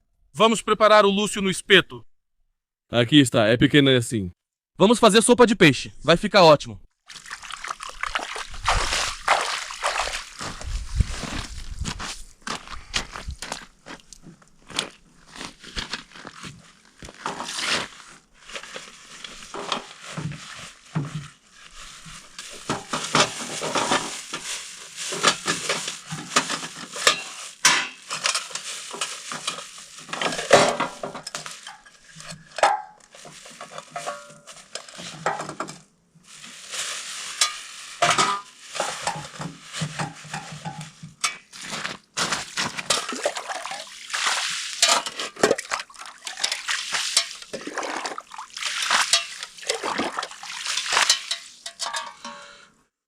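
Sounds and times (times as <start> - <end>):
metal pot and utensils handled: 18.5 - 48.1, 48.8 - 52.8.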